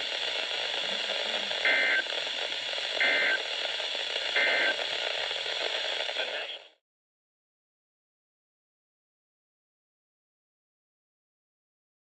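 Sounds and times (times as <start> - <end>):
radio receiver hiss: 0.0 - 6.8.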